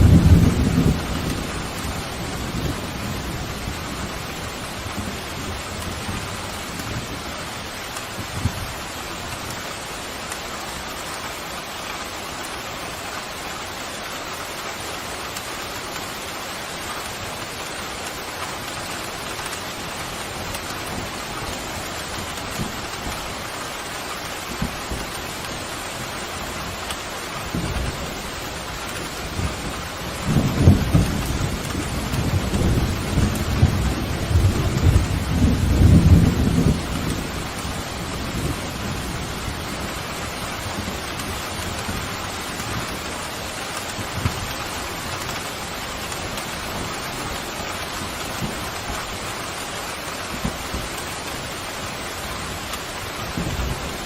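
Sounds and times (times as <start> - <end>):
thunder rumbling: 0.0 - 8.8, 27.5 - 54.0
rain pouring: 0.0 - 54.0.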